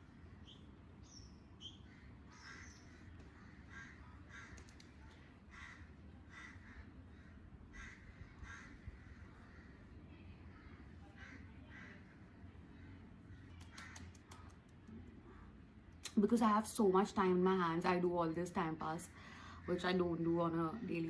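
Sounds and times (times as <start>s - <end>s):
high bird chirps: 0.4s - 3.0s
crows cawing faintly: 1.6s - 14.3s.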